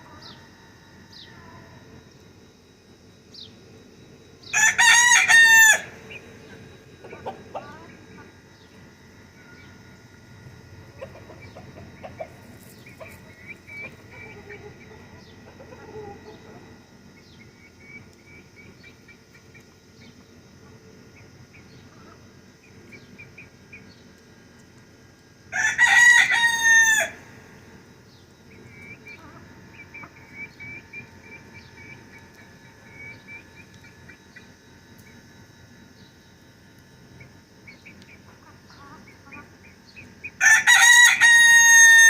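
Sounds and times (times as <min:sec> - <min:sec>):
rooster crowing: 0:04.5 - 0:06.2, 0:25.5 - 0:27.4, 0:40.4 - 0:42.0
hens clucking: 0:04.8 - 0:08.9, 0:10.7 - 0:16.8, 0:28.5 - 0:34.5, 0:37.7 - 0:42.0.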